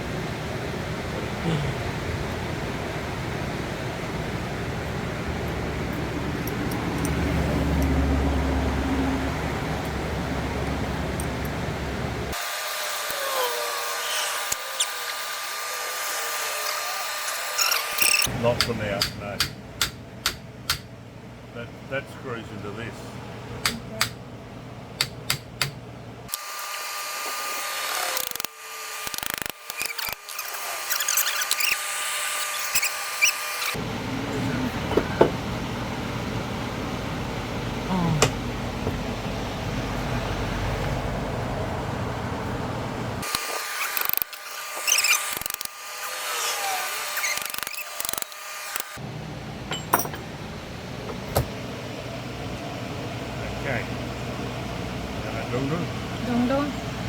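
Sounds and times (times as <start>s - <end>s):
electric power tool whining: 12.3s - 18.3s, 26.3s - 33.8s, 43.2s - 49.0s
metal parts scraping: 29.2s - 33.8s
metal parts clinking: 49.7s - 50.2s.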